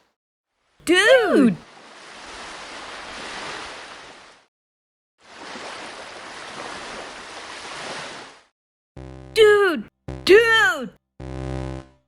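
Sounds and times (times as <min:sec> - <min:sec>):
ocean waves breaking: 0:01.6 - 0:04.5, 0:05.2 - 0:08.5.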